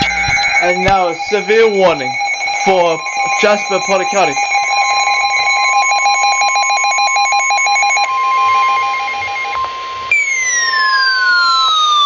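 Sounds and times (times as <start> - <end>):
rapid warbling electronic beeps: 0.0 - 9.5
steady warning alarm tone: 0.0 - 12.0.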